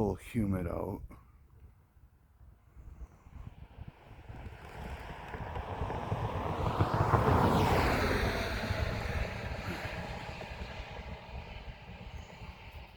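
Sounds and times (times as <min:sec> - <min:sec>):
wind buffeting microphone: 0:01.6 - 0:12.9
vehicle passing on highway: 0:02.5 - 0:12.9.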